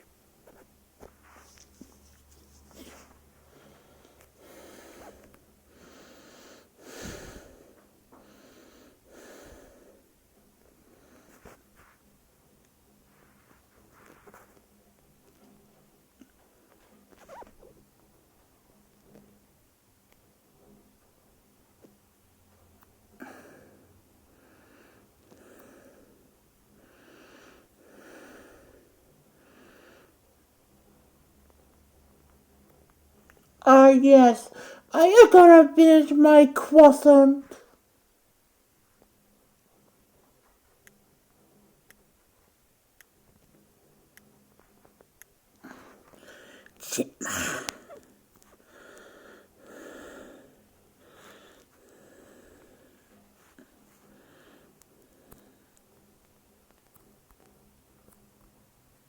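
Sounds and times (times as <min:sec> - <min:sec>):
person breathing: 0:02.7 - 0:10.1, 0:34.5 - 0:34.9, 0:45.7 - 0:46.8, 0:48.6 - 0:55.7.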